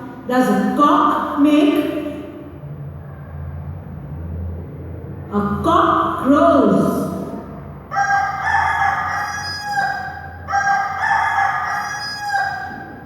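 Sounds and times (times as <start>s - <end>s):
rooster crowing: 7.9s - 13.0s.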